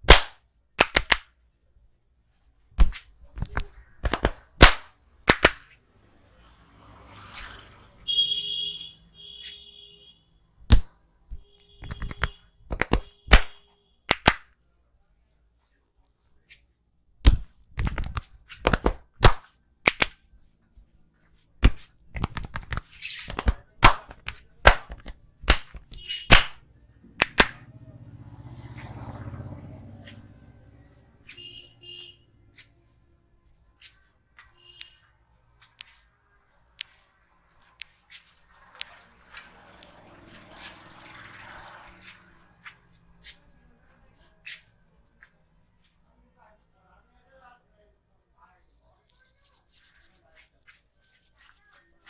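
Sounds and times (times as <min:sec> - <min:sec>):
hands slapping and clapping: 0:00.0 - 0:01.4, 0:02.8 - 0:05.8, 0:10.7 - 0:14.6, 0:17.2 - 0:20.3, 0:21.6 - 0:27.7, 0:33.5 - 0:40.7.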